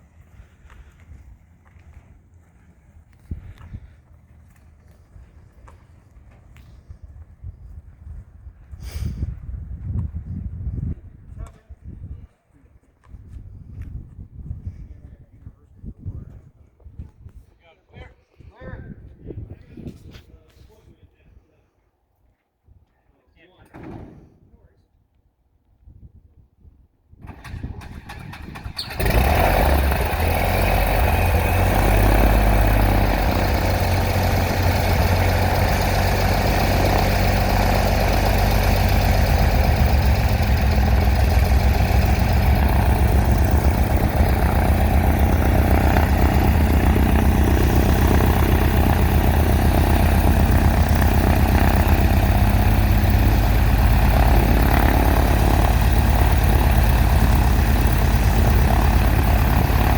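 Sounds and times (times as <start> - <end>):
propeller plane engine starting: 0.0 - 7.9, 27.2 - 59.9.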